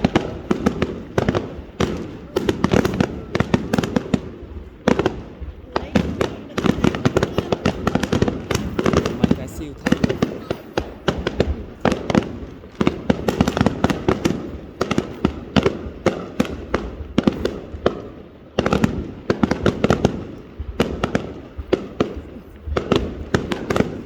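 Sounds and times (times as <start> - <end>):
fireworks bursting: 0.0 - 24.0.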